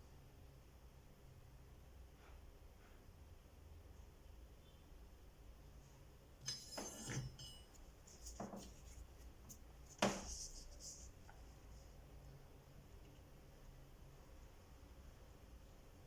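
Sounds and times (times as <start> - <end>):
rubbing of small objects: 7.8 - 11.9.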